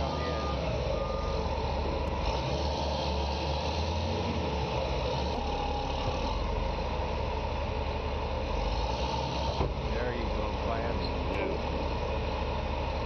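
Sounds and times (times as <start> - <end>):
heavy diesel engine running: 0.0 - 13.0.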